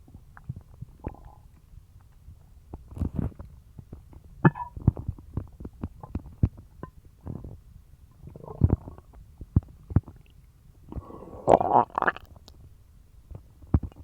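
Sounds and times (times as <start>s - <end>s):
stomach gurgling and rumbling: 0.0s - 14.0s.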